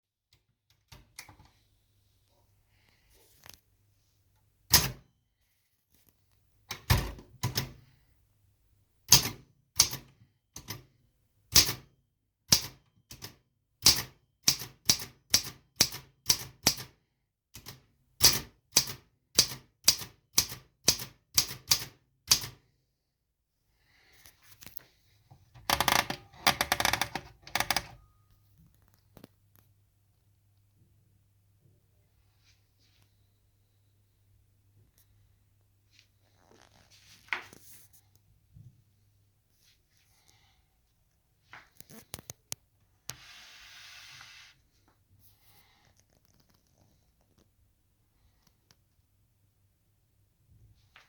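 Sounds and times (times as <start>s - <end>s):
manual typewriter typing: 9.1s - 10.8s, 25.6s - 28.0s
typewriter mechanical rattle: 25.6s - 28.0s.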